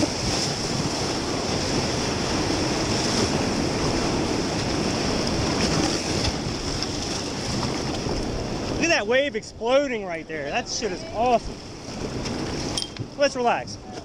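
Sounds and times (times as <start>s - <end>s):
whitewater rushing: 0.0s - 14.0s.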